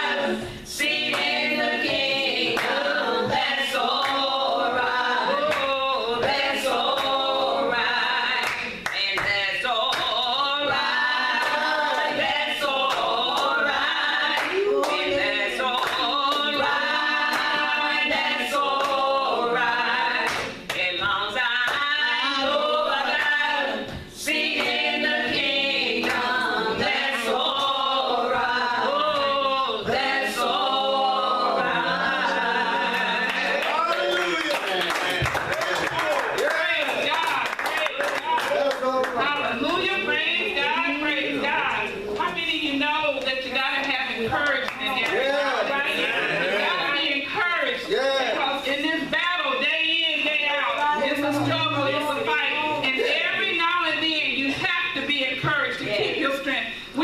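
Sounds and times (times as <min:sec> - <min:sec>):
choir singing: 0:00.0 - 0:34.1
sharp claps: 0:33.3 - 0:39.2.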